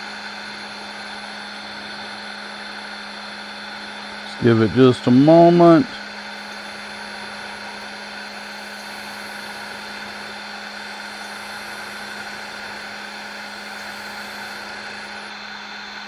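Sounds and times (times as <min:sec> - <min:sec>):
machinery motor hum: 0:04.2 - 0:06.0
constant hiss: 0:04.3 - 0:06.0.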